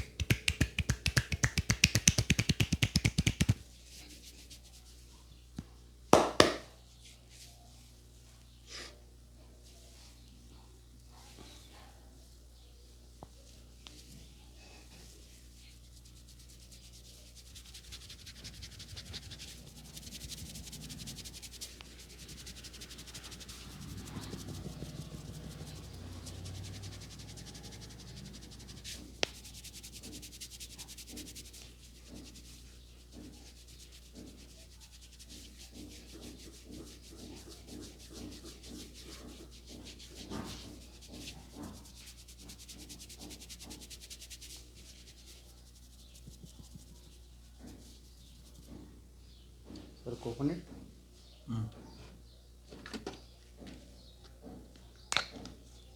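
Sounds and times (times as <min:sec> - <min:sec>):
hands rubbing hair and scalp: 0:00.0 - 0:05.0, 0:15.2 - 0:48.9.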